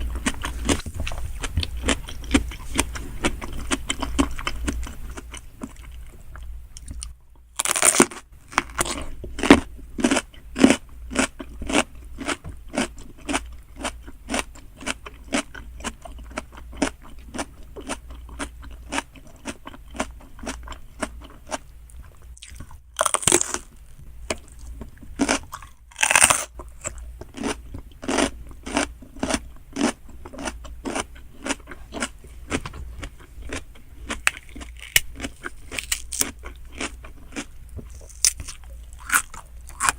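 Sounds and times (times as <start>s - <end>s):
wet chewing: 0.0s - 7.2s, 24.3s - 39.9s.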